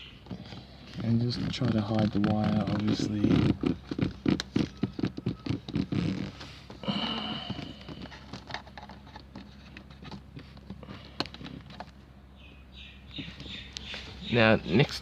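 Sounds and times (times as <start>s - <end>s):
scraping rustle with squeak: 0.1s - 6.8s
clicks and taps on plastic trim: 1.3s - 6.0s.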